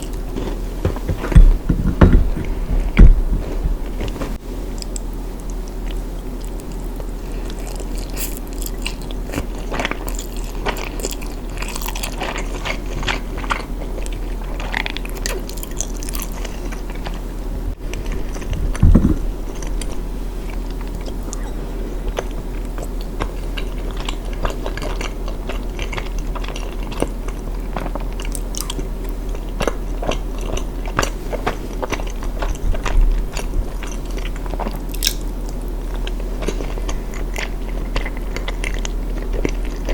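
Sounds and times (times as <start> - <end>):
person chewing food: 0.0 - 39.9
low thump: 0.8 - 3.8, 18.6 - 19.3.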